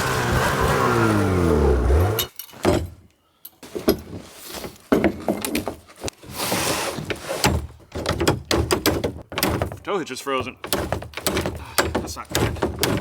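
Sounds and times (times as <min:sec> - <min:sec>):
metal knocks and rattles: 0:07.4 - 0:13.0.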